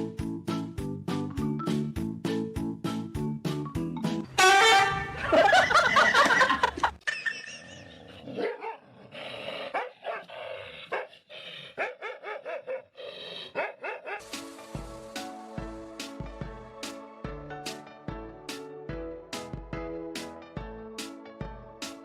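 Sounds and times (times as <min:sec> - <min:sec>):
dog barking: 0:08.3 - 0:08.9, 0:09.7 - 0:11.1, 0:11.8 - 0:14.2.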